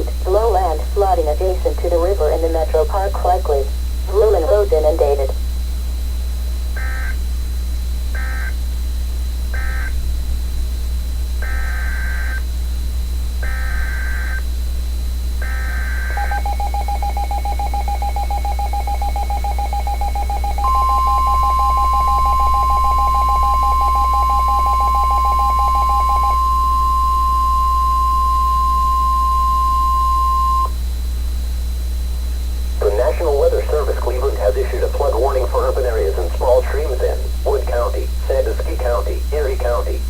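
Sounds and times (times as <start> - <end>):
low steady hum: 0.0 - 40.0
steady warning alarm tone: 6.5 - 10.0, 11.1 - 40.0
warbling data bursts: 32.8 - 40.0.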